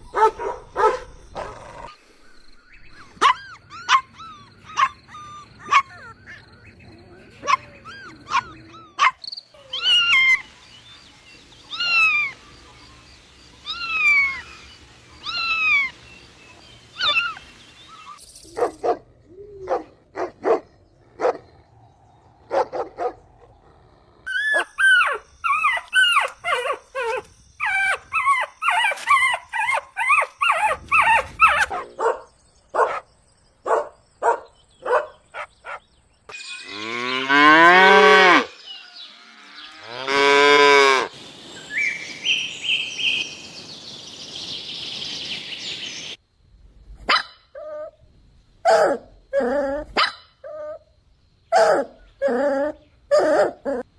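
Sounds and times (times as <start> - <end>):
puppies whimpering and yipping: 3.0 - 10.5, 24.3 - 31.8
cow mooing: 36.7 - 38.5, 39.1 - 41.1.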